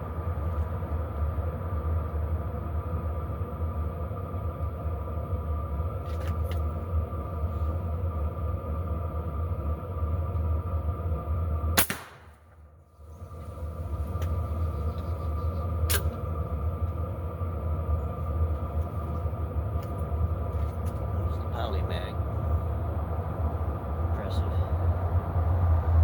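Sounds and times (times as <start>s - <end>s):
low rumble: 0.0s - 26.0s
air rifle shot: 11.8s - 12.5s, 15.9s - 16.2s.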